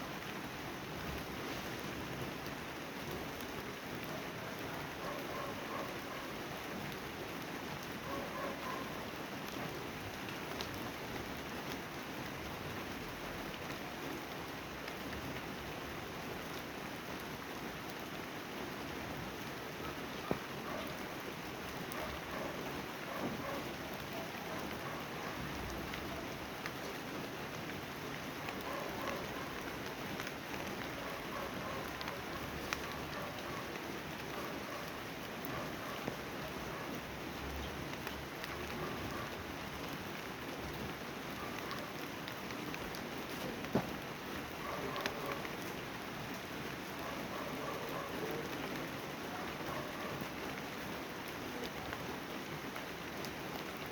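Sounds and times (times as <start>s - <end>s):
rain falling: 0.0s - 53.9s.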